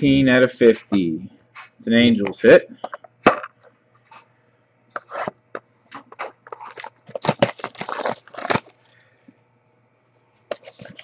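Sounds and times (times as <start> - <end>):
card packaging rustling and crinkling: 6.0 - 8.9, 10.5 - 11.0.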